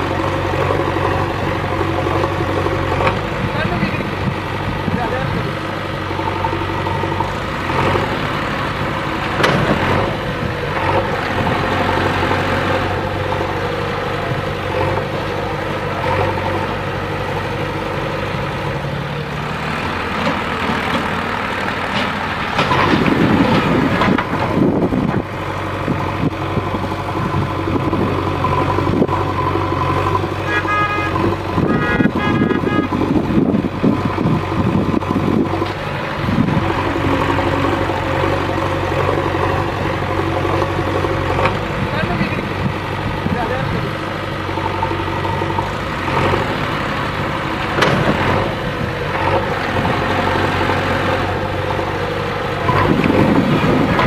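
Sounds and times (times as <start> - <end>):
diesel engine running: 0.0 - 54.0
short horn beeps: 30.4 - 33.0.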